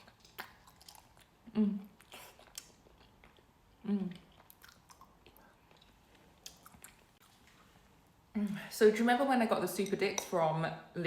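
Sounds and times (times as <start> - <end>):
person chewing: 0.0 - 7.8.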